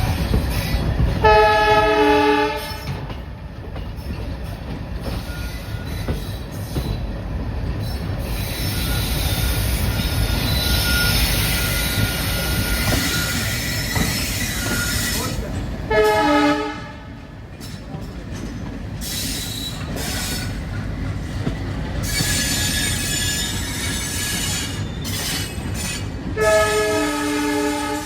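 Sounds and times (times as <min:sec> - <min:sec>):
low rumble of moving train: 0:00.0 - 0:28.0
locomotive horn blast: 0:01.2 - 0:03.0, 0:15.9 - 0:17.2, 0:26.4 - 0:28.0
faint wheel squeal: 0:07.9 - 0:15.4.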